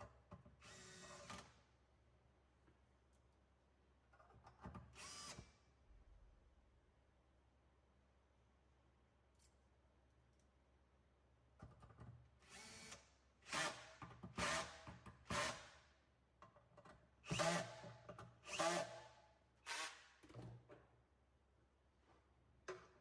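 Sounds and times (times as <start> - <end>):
power drill bursts: 18.4 - 19.0, 19.7 - 20.0.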